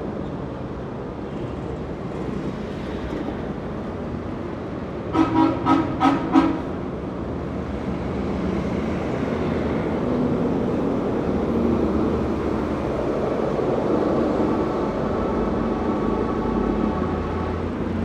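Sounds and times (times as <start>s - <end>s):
heavy street traffic rumble: 0.0s - 18.0s
vehicle horn honks: 5.2s - 6.6s.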